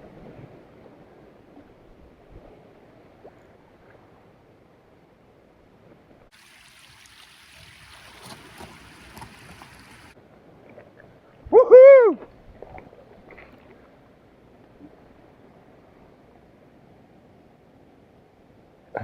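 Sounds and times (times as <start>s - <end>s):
sea water washing on shore: 6.3s - 10.2s
small splashes: 6.3s - 10.2s.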